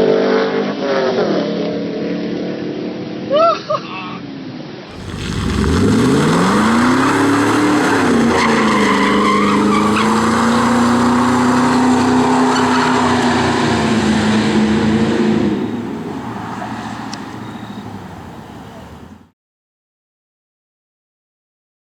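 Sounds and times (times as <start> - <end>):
tyre screech: 4.9 - 17.8
car engine revving: 4.9 - 19.2.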